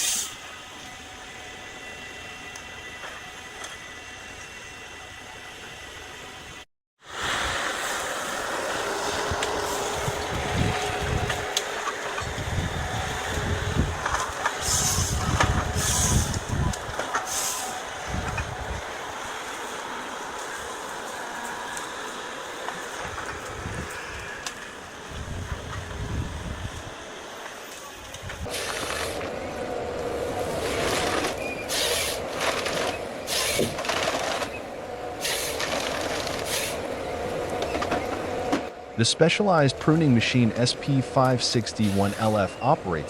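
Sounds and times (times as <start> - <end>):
heavy machinery running: 7.7 - 26.9, 27.8 - 43.0.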